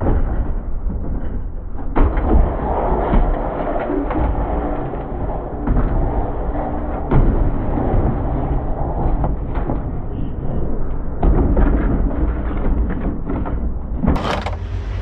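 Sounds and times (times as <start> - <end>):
low rumble: 0.0 - 15.0
scrap metal thudding onto pile: 14.2 - 14.8.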